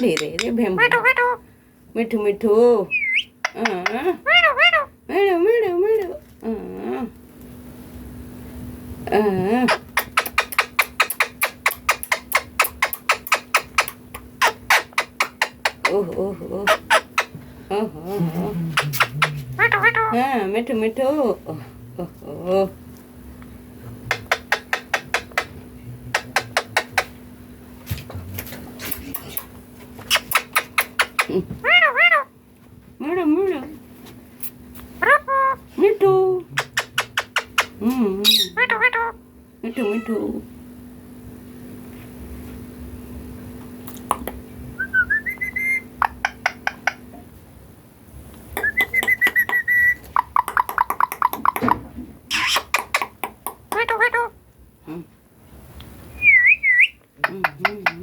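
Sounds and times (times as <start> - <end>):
parrot whistling and chattering: 0.0 - 1.4, 2.9 - 4.9, 9.7 - 16.0, 16.6 - 17.4, 18.7 - 20.2, 28.8 - 32.3, 36.6 - 39.2, 44.8 - 47.0, 48.5 - 51.7, 52.3 - 54.4, 56.2 - 58.0
faint low hum: 0.0 - 58.0
parrot squawk: 0.2 - 1.4, 2.9 - 4.9, 16.6 - 17.3, 18.8 - 20.2, 30.1 - 32.3, 36.6 - 39.2, 52.3 - 53.1, 53.8 - 54.4.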